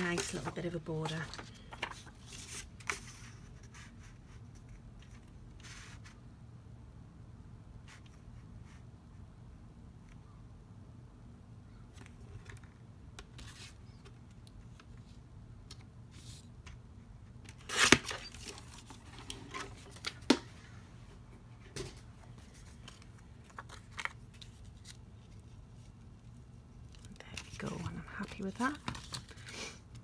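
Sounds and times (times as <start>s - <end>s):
paper rustling: 0.0s - 5.2s, 21.8s - 26.4s.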